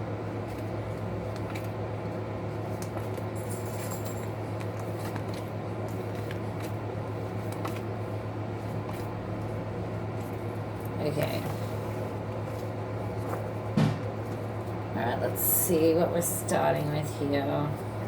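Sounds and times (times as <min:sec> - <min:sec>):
cards rustling: 0:04.6 - 0:08.0.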